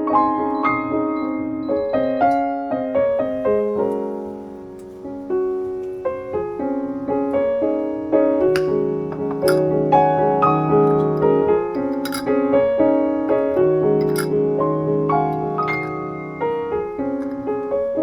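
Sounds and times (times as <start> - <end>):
gentle piano music: 0.0 - 18.0
faint clink: 10.9 - 12.4, 14.0 - 14.4.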